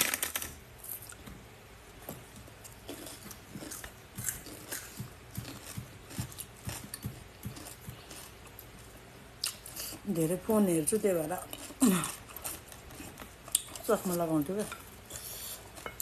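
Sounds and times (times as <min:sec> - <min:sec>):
chewing with wet mouth smacks: 0:02.9 - 0:08.3, 0:11.5 - 0:13.9.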